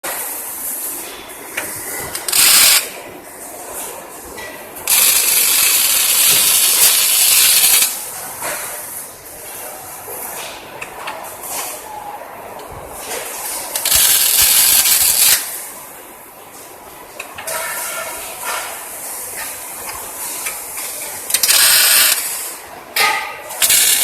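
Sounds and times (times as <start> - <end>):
welding hissing and crackling: 0.2 - 3.0, 4.9 - 8.9, 13.0 - 15.7, 17.5 - 22.6, 23.5 - 24.0.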